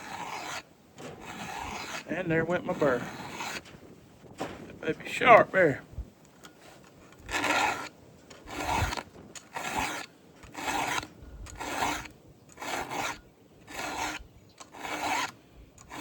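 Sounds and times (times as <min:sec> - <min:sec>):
file rasping on chainsaw chain: 0:00.0 - 0:03.6, 0:07.1 - 0:07.9, 0:08.5 - 0:16.0.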